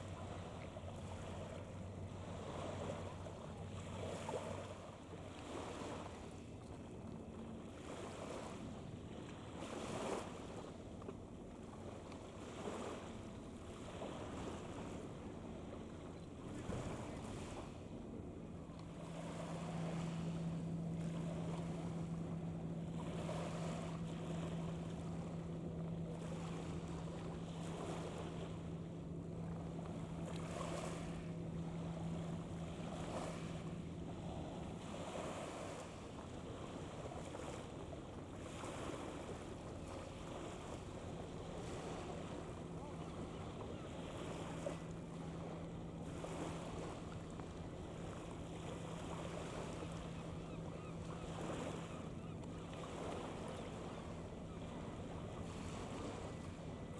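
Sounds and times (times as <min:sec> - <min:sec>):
waves washing on shore: 0:00.0 - 0:06.4, 0:16.4 - 0:52.2
steady low hum: 0:00.0 - 0:56.9.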